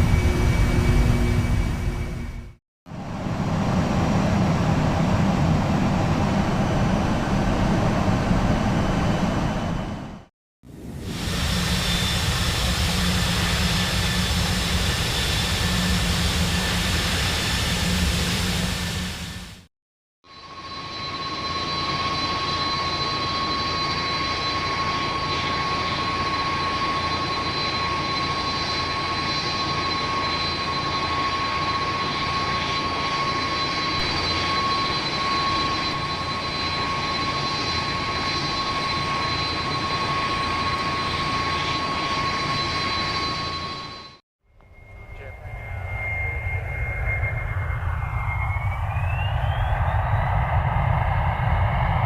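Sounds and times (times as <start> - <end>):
aircraft engines idling: 0.0 - 19.6.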